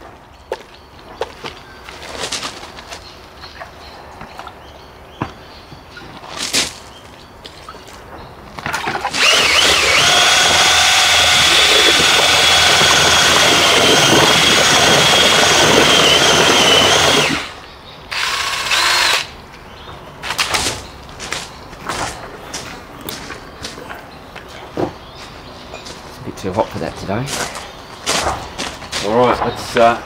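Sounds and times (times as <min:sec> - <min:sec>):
electric drill mixer whining: 0:09.1 - 0:19.3.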